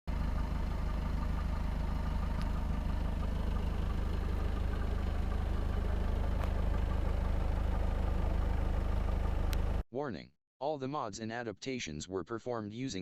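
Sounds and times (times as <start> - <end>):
car engine idling: 0.1 - 9.8.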